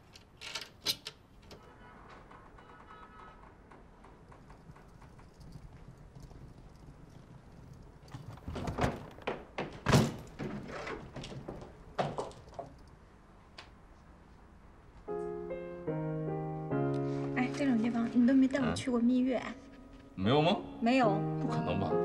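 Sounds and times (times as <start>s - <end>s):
door knocks and thuds: 8.5s - 12.3s
piano music: 15.1s - 22.0s.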